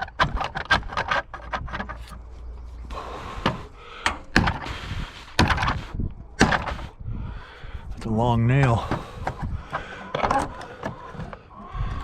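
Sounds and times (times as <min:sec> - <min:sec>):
wood creaking against nail: 0:00.0 - 0:02.3, 0:03.3 - 0:06.9, 0:08.7 - 0:12.0.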